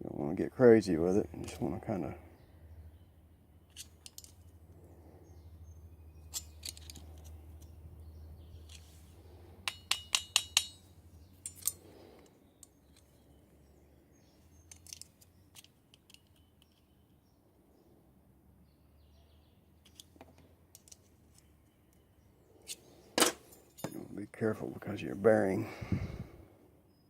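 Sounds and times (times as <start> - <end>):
screwdriver metallic clicks and taps: 9.7 - 10.8.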